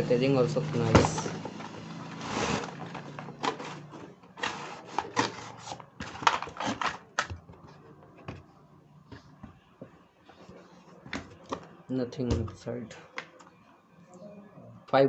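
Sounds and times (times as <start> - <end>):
toy packaging being opened: 1.6 - 7.3.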